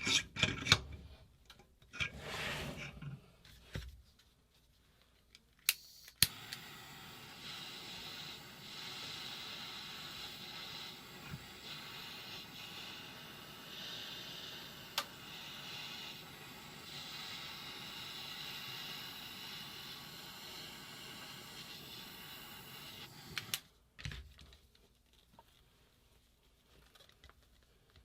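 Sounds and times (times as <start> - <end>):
steady hiss: 5.7 - 23.8.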